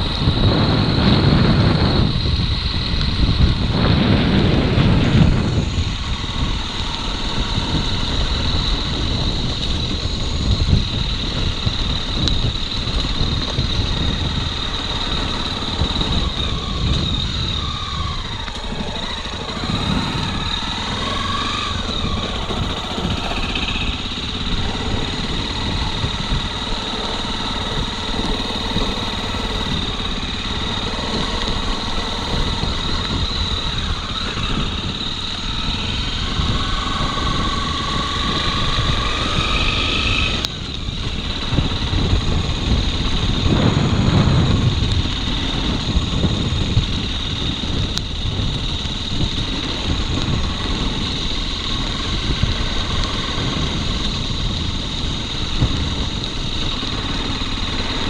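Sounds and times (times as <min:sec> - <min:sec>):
motorcycle engine rumbling: 0:00.0 - 0:58.0
steady high-pitched tone: 0:18.4 - 0:36.4.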